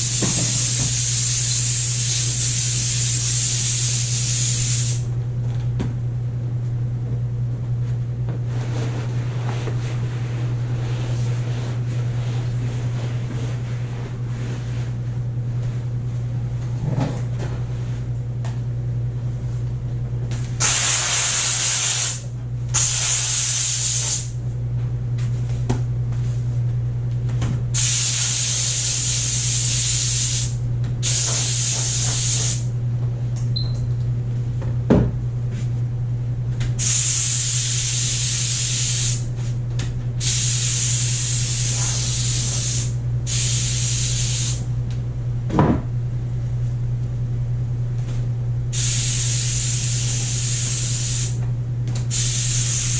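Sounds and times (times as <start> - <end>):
steam cleaner hissing: 0.0 - 5.1, 20.6 - 22.2, 22.8 - 24.3, 27.8 - 32.7, 36.8 - 39.3, 40.2 - 44.6, 48.7 - 51.4, 52.1 - 52.9
steady low hum: 0.0 - 52.9.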